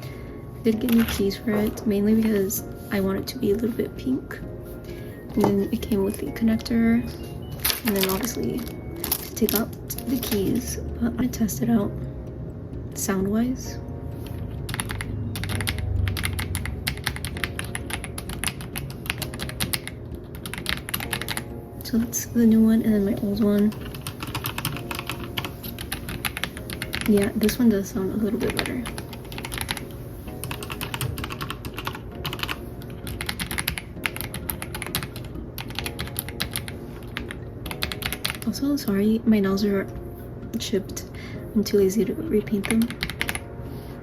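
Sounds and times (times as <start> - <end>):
mechanical keyboard typing: 0.8 - 1.6, 7.5 - 10.6, 14.4 - 21.5, 23.4 - 39.0, 42.4 - 43.5.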